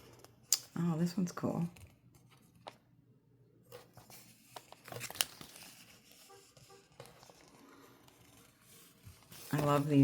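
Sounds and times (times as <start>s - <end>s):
packaging crinkling and rustling: 3.8s - 10.0s.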